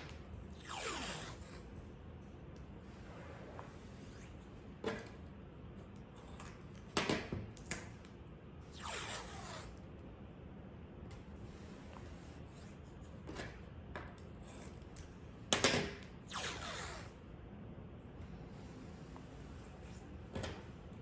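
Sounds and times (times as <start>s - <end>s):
masking tape ripping off roll: 0.5s - 1.7s, 8.7s - 9.8s, 16.2s - 17.2s.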